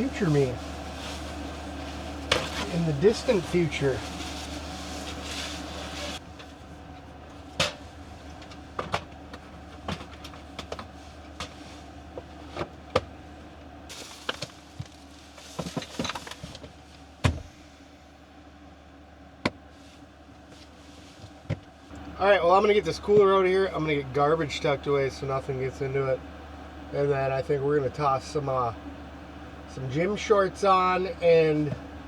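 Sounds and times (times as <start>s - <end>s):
rustling: 0.0s - 6.6s, 13.9s - 17.1s.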